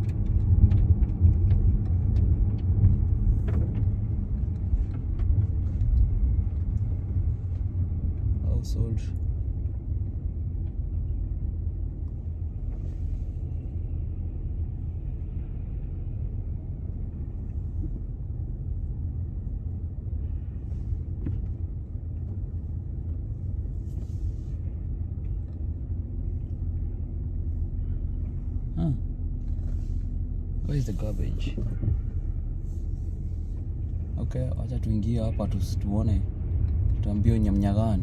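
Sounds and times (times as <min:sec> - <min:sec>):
car engine and tyres rumbling: 0:00.0 - 0:38.0.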